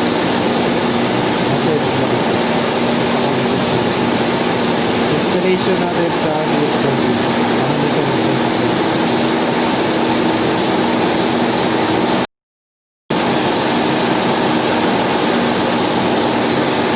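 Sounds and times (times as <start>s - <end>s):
loud rushing motor or fan noise: 0.0s - 12.3s, 13.1s - 16.9s.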